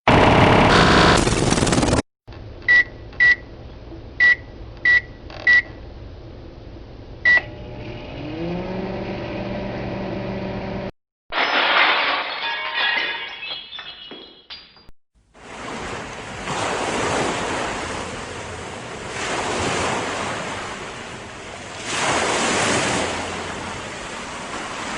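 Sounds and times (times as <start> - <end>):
microwave oven humming: 7.2 - 10.9
glass shattering: 11.3 - 14.9
glass pieces tinkling: 11.4 - 14.9.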